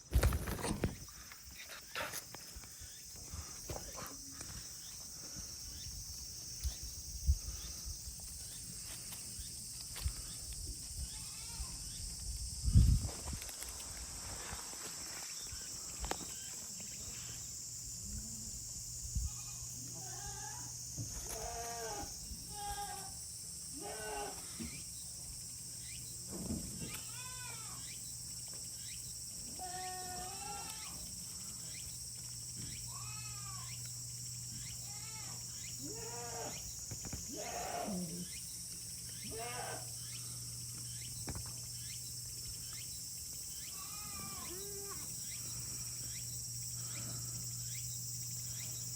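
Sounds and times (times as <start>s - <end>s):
goats bleating: 21.2s - 24.6s, 37.3s - 38.1s, 39.3s - 39.9s.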